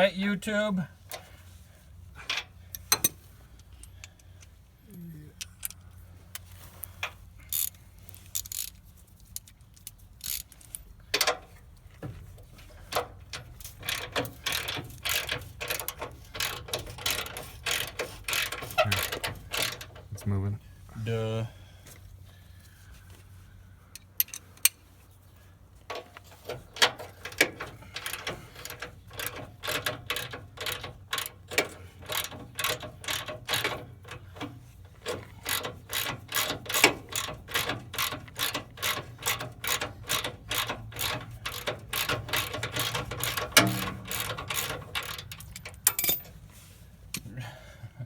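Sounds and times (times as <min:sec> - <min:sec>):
socket ratchet wrench clicking: 0:07.5 - 0:08.8, 0:09.4 - 0:11.3, 0:13.8 - 0:19.9, 0:27.3 - 0:34.2, 0:35.1 - 0:46.2.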